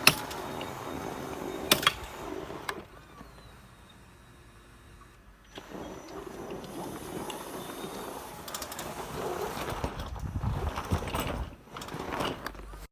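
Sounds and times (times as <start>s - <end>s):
sharp clicks and knocks: 1.7s - 2.1s
machine chain drive rattling: 5.7s - 12.8s.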